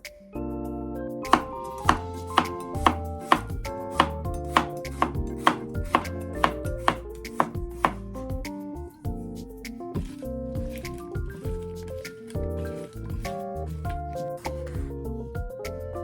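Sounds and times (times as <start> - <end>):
background music: 0.0 - 16.0
knife chopping on cutting board: 1.3 - 8.2.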